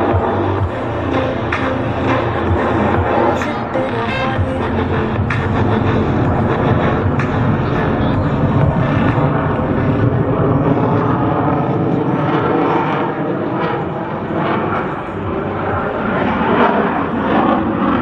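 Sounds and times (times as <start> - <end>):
jet engines roaring: 0.0 - 18.0.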